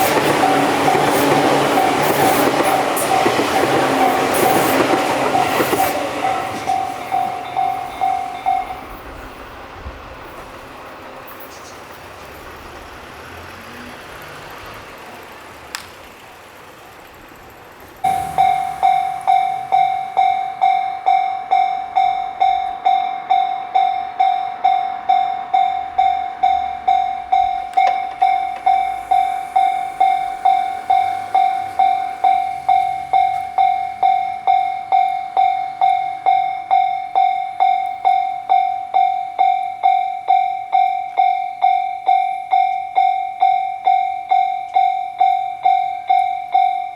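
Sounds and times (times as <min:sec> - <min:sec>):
level-crossing warning bell: 0:00.0 - 0:46.9.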